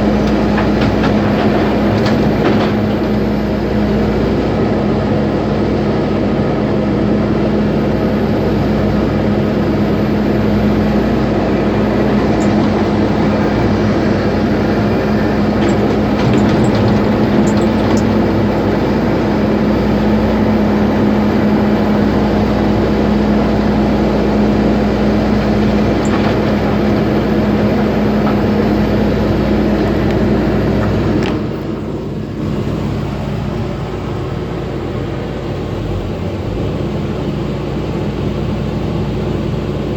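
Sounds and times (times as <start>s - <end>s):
heavy machinery crushing concrete: 0.0s - 3.6s, 11.0s - 19.6s, 24.7s - 31.2s.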